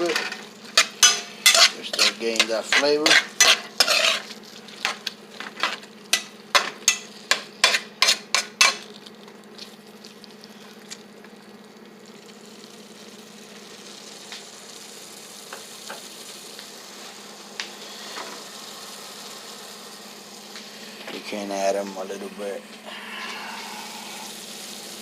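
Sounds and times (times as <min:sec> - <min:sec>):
utensil scraping frying pan: 0:00.0 - 0:08.9
food sizzling in pan: 0:00.0 - 0:25.0.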